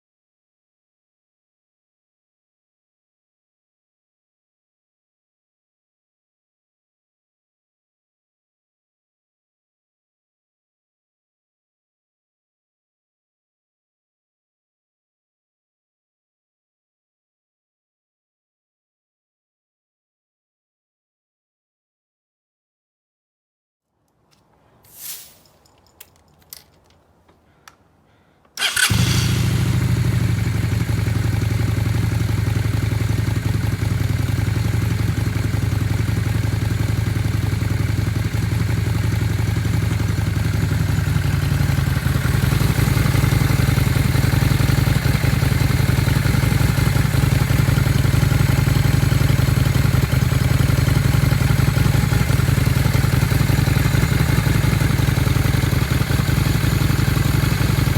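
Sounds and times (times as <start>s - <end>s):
faint clicks: 25.8s - 27.8s
motorcycle engine idling: 28.6s - 57.9s.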